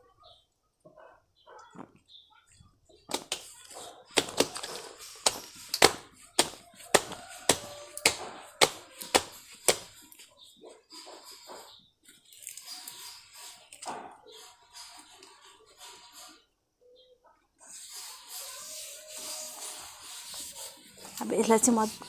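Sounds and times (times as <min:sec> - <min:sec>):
soil being patted into pot: 0:03.1 - 0:10.1.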